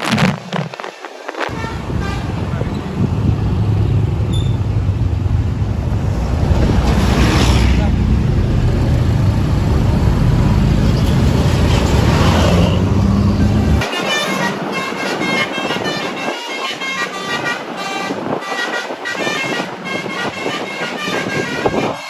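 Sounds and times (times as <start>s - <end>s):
loud low rumble: 1.5s - 13.8s
bus multi-tone horn tune: 1.5s - 22.0s.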